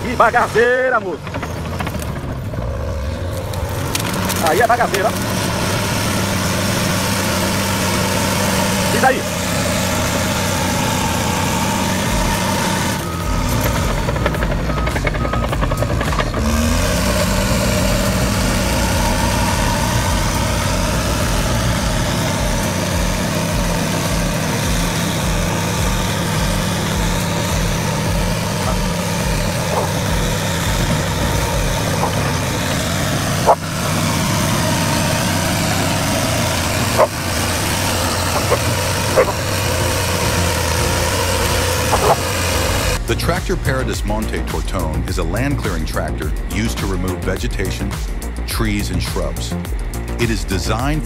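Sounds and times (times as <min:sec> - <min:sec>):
heavy diesel engine running: 0:00.0 - 0:51.0.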